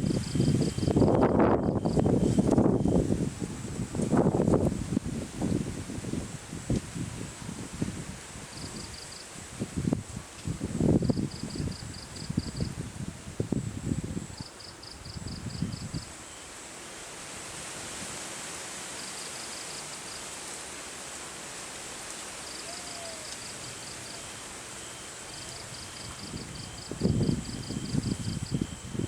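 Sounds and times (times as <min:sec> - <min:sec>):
wind buffeting microphone: 0:00.0 - 0:16.1, 0:25.8 - 0:29.0
wind rushing across field: 0:00.0 - 0:16.2, 0:25.6 - 0:29.0
insects chirping: 0:00.0 - 0:18.2, 0:18.9 - 0:29.0.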